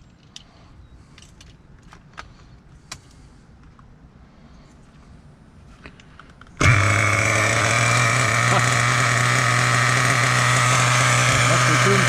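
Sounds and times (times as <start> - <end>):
faint handling clicks: 0.0 - 0.5
small nitro engine idling: 6.6 - 12.0.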